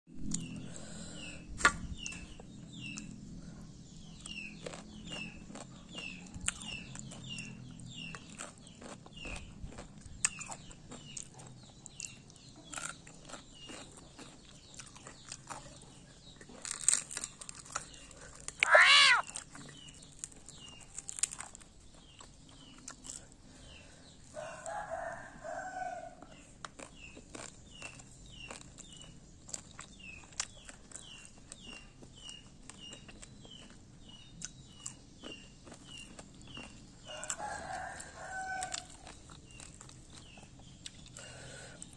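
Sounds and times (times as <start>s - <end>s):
chicks peeping: 17.8s - 20.9s
rooster crow: 18.6s - 19.2s, 24.4s - 26.2s, 37.1s - 39.0s.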